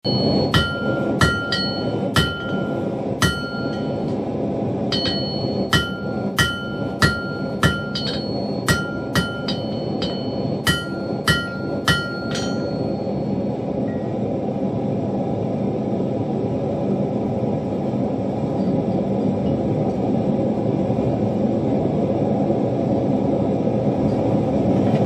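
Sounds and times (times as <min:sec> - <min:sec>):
hammer striking steel on anvil: 0:00.0 - 0:04.2, 0:04.9 - 0:13.4
steady rushing noise: 0:00.0 - 0:25.0.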